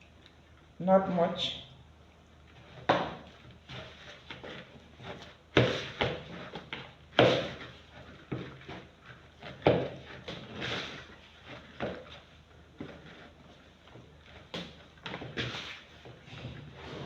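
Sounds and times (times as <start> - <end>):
dough thumping in a bowl: 2.7 - 11.0.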